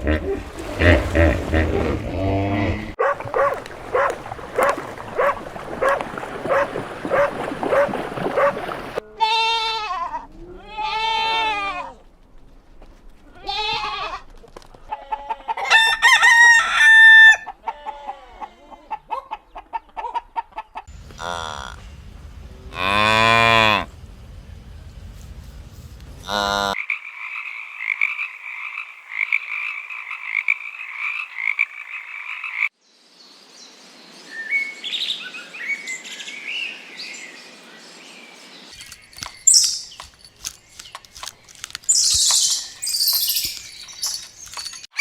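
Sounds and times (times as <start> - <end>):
rooster crowing: 15.6 - 17.5
chickens clucking: 17.5 - 20.9.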